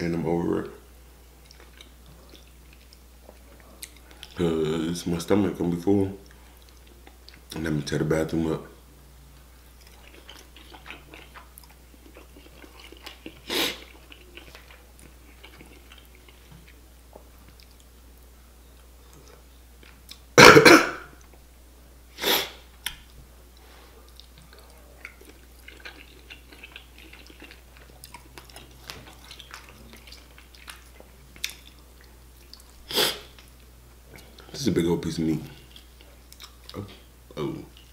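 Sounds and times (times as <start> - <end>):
person chewing with wet mouth sounds: 1.3 - 4.4, 6.2 - 7.6, 9.3 - 20.3, 22.8 - 34.5, 35.5 - 37.9.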